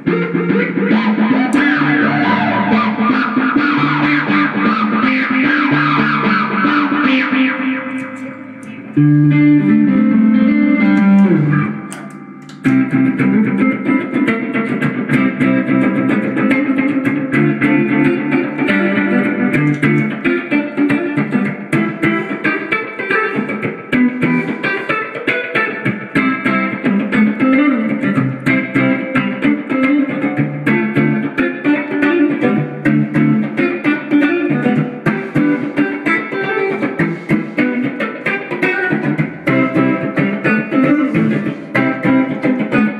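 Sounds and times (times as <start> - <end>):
guitar picking fast notes: 0.0 - 42.9.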